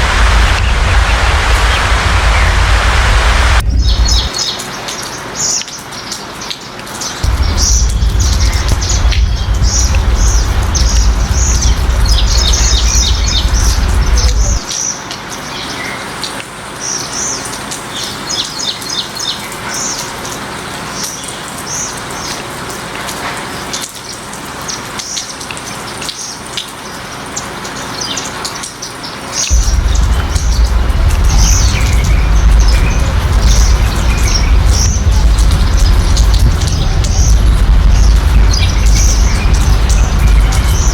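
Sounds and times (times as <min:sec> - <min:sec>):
loud low rumble: 0:00.0 - 0:04.3, 0:07.2 - 0:14.7, 0:29.5 - 0:40.9
steady rain falling: 0:00.0 - 0:40.9.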